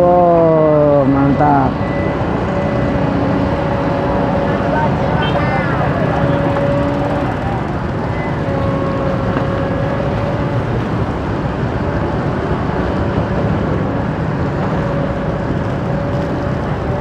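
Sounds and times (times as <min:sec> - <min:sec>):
diesel engine running: 0:00.0 - 0:17.0
faint whine: 0:00.4 - 0:12.4.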